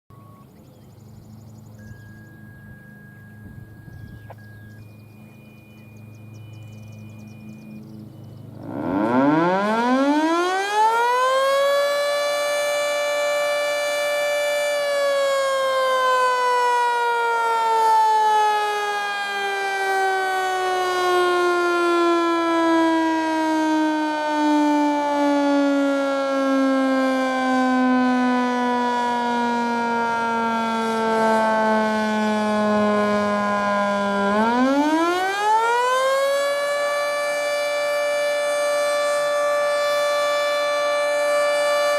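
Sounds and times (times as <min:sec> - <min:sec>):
warning siren winding: 0:08.6 - 0:41.9.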